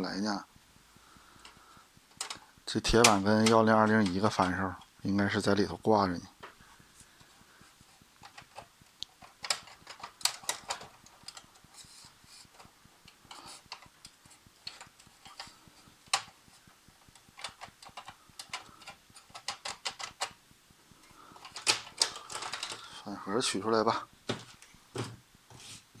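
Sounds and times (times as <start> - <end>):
plastic and metal parts clicking: 1.4 - 4.9, 8.2 - 16.4, 17.0 - 20.4, 21.3 - 23.0.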